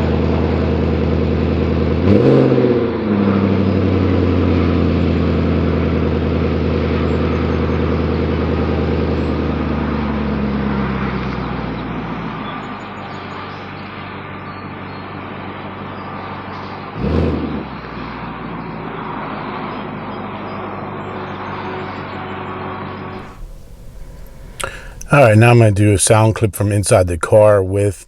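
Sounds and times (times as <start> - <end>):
car engine deep exhaust note: 0.0 - 12.3, 23.2 - 27.3
engine rev blip: 23.2 - 27.0.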